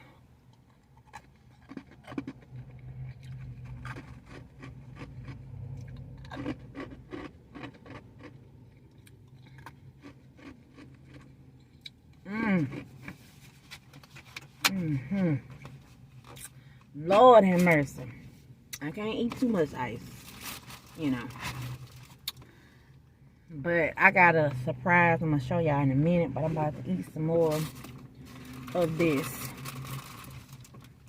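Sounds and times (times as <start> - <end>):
crushed ice being chewed: 0.5 - 13.2, 27.5 - 30.9.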